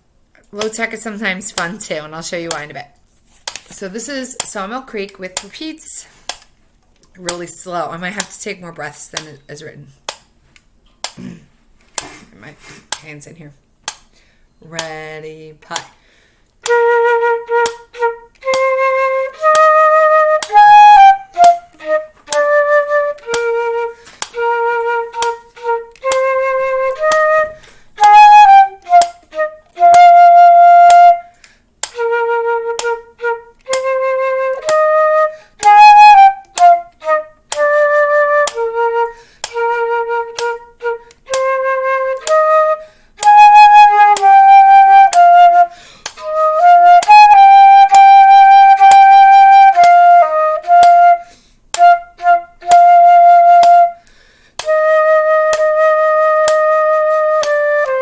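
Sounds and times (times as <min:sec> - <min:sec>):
metronome clicking: 0:00.4 - 0:02.8, 0:03.5 - 0:05.7, 0:06.3 - 0:11.2, 0:13.8 - 0:58.0
woodwind playing slow melody: 0:16.6 - 0:54.0, 0:54.6 - 0:58.0.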